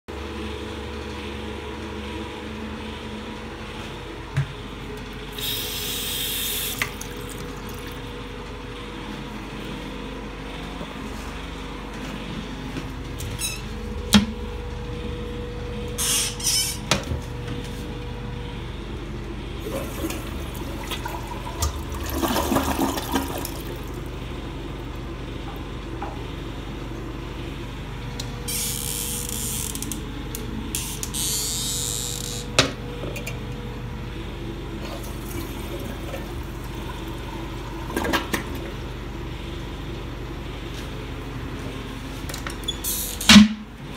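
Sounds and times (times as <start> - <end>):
steady hum: 0.1 - 43.9
water running into tank: 6.5 - 8.0, 19.6 - 24.1, 34.8 - 38.8
toilet flushing: 19.6 - 24.1, 34.8 - 38.9.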